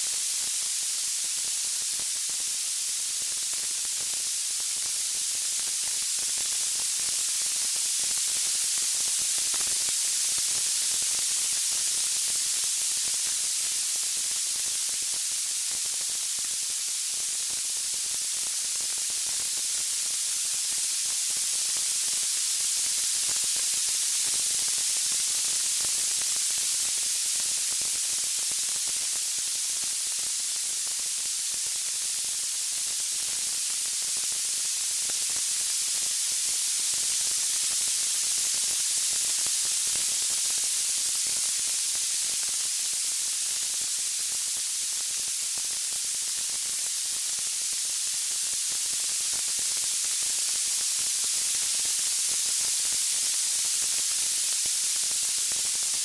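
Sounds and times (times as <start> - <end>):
high-pitched white noise hiss: 0.0 - 56.0.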